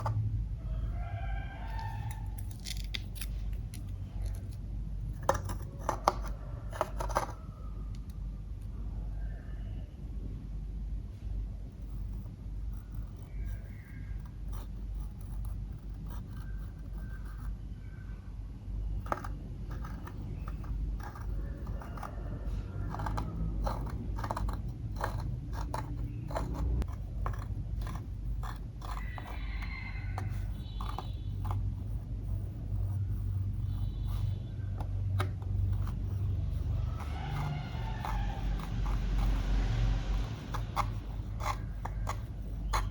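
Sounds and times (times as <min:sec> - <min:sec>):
slime crunching and scraping: 0:01.7 - 0:04.6.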